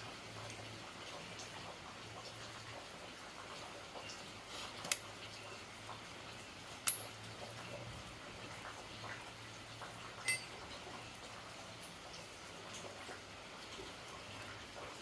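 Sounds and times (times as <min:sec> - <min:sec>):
small metal objects clicking: 0:06.8 - 0:07.1
sharp metallic clinks: 0:10.2 - 0:10.5.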